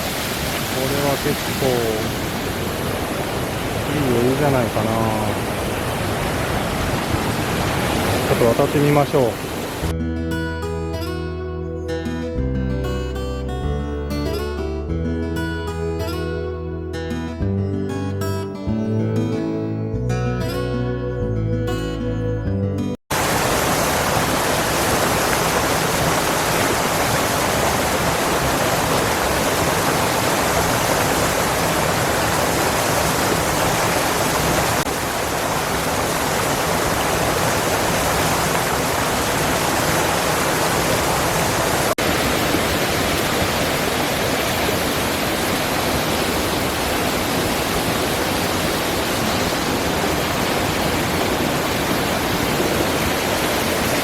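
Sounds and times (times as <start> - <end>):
waterfall rushing: 0.0 - 9.9, 23.1 - 54.0.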